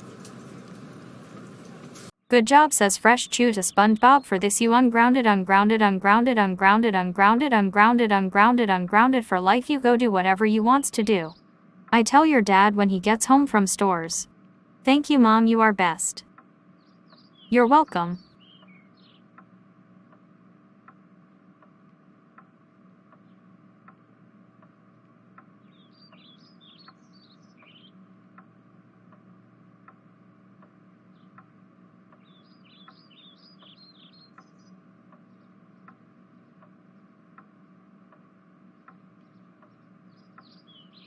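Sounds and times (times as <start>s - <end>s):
steady low hum: 0.0s - 41.0s
regular ticking: 2.5s - 41.0s
faint bird chirping: 16.6s - 19.4s, 25.6s - 28.2s, 32.1s - 37.8s, 38.6s - 41.0s.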